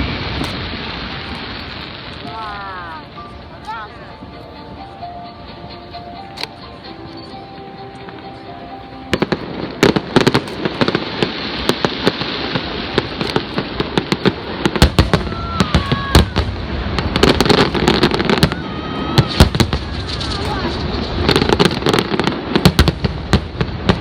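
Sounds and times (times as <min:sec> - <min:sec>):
fireworks bangs and crackling: 0:00.0 - 0:03.9, 0:09.1 - 0:24.0
music: 0:01.0 - 0:24.0.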